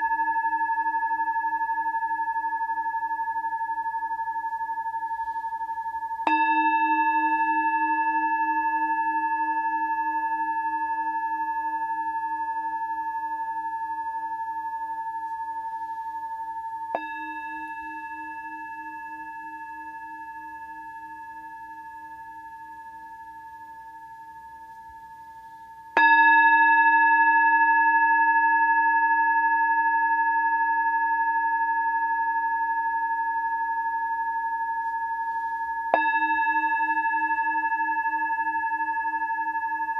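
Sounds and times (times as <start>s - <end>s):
singing bowl ringing: 0.0s - 39.9s.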